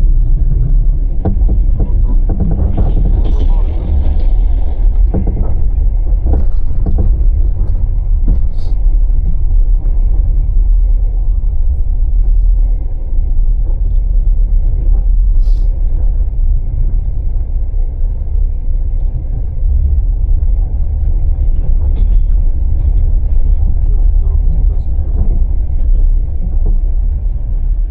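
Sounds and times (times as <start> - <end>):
train rumbling on rails: 0.0 - 27.9.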